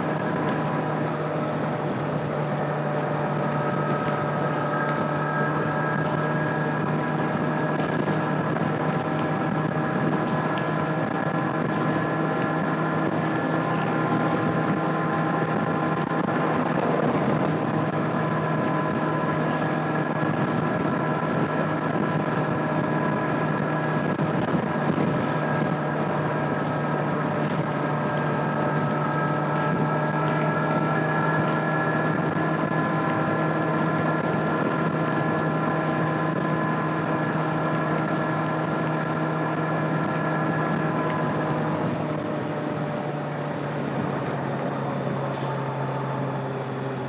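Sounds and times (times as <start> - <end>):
motorcycle engine cruising: 0.0 - 47.0
wind noise on microphone: 0.0 - 47.0.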